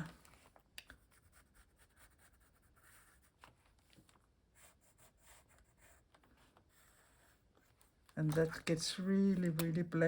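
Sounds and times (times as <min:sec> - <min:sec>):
pencil scratching on paper: 0:01.0 - 0:03.7, 0:04.5 - 0:08.0.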